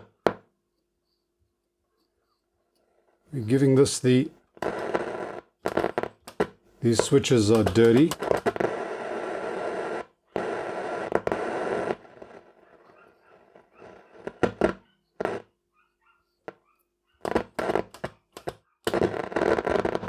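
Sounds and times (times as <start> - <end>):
radio static noise: 3.4 - 6.0, 6.8 - 15.4, 17.3 - 18.0, 18.9 - 20.0
radio crackling and clicking: 3.4 - 15.4, 17.2 - 20.0.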